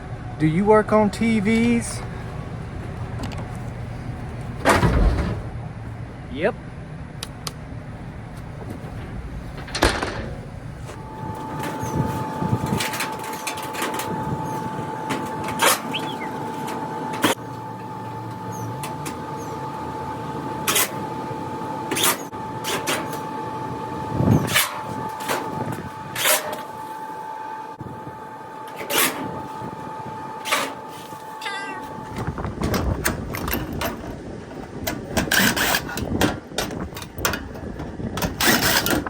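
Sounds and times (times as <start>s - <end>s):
high-pitched hum: 0.0s - 36.2s
metal clanks and knocks: 4.6s - 6.0s, 8.6s - 11.0s, 31.4s - 39.0s.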